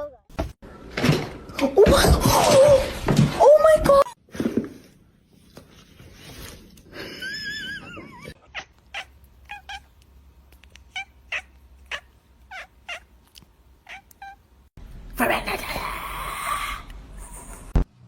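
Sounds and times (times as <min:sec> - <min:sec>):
cat meowing: 0:13.8 - 0:14.4.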